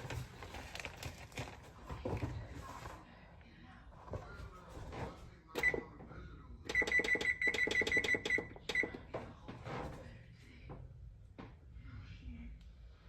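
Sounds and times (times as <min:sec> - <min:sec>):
kitchen appliance beeps: 0:05.6 - 0:05.9, 0:06.7 - 0:09.1.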